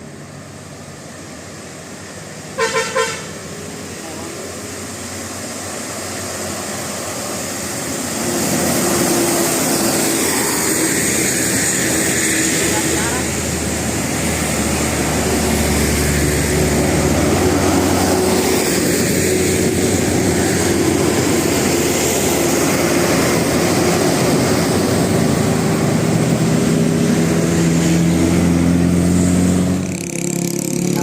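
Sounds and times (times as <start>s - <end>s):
bus diesel engine drone: 0.0s - 31.0s
road noise: 0.0s - 31.0s.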